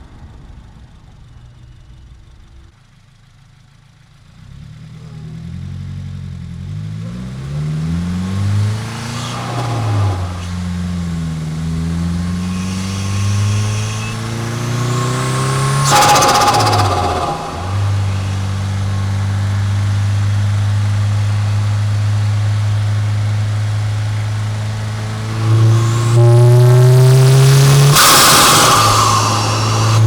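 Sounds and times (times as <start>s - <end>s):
car engine accelerating: 3.8s - 30.0s
turbo blow-off whoosh: 7.8s - 21.5s, 24.5s - 30.0s.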